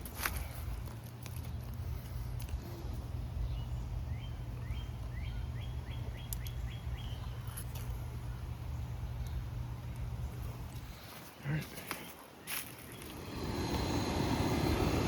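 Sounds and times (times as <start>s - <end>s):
steady low hum: 0.0s - 15.0s
bird chirping: 2.7s - 11.0s, 11.9s - 14.8s.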